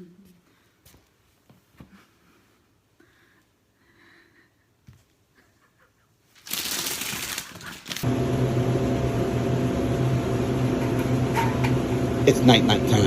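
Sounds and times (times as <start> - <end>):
steady low hum: 8.0 - 13.0.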